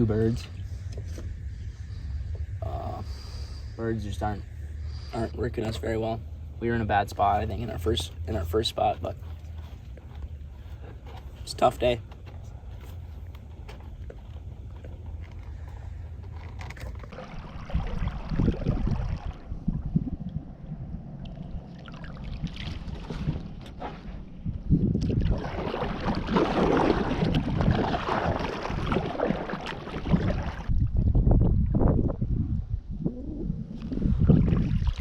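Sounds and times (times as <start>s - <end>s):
boat engine rumble: 0.0s - 35.0s
water rushing and splashing: 17.0s - 30.8s.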